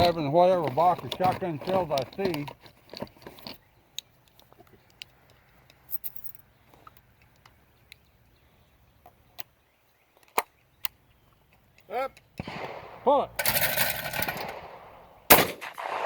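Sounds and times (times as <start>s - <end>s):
shotgun shells clicking and rattling: 0.0s - 8.0s, 13.4s - 14.7s
sharp loud clicks: 12.2s - 16.0s.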